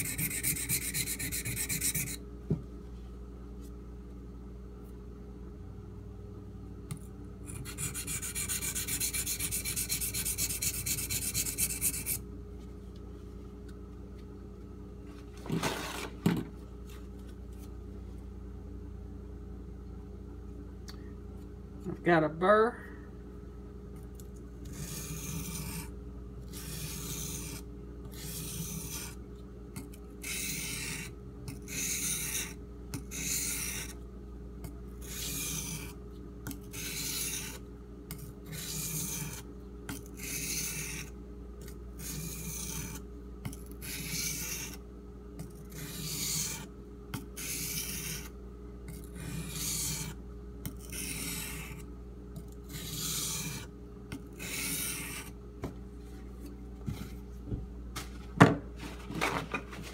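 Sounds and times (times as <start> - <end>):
knife scraping on whetstone: 7.5 - 12.2, 24.7 - 25.9, 26.5 - 29.2, 30.2 - 34.0, 35.0 - 36.0, 36.6 - 43.0, 43.8 - 44.8, 45.6 - 46.7, 47.4 - 48.3, 48.9 - 51.8, 52.7 - 53.7, 54.4 - 55.3.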